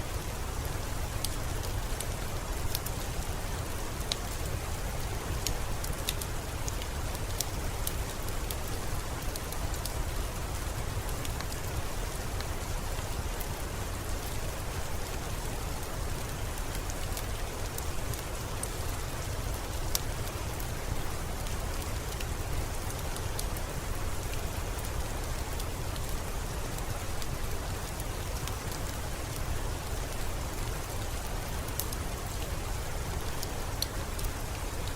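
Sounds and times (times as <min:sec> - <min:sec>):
steady rain hiss: 0:00.0 - 0:34.9
fire crackling and popping: 0:01.1 - 0:03.1, 0:03.9 - 0:10.0, 0:24.2 - 0:34.9.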